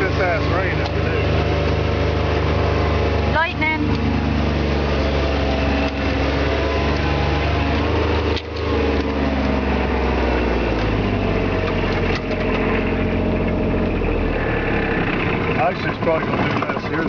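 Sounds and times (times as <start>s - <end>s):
vehicle engine running: 0.0s - 17.0s.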